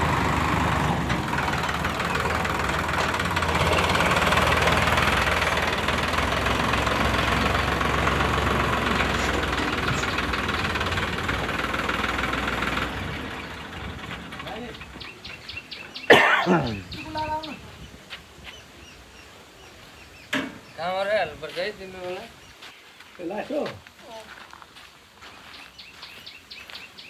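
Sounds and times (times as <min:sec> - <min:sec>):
diesel engine running with clatter: 0:00.0 - 0:17.5.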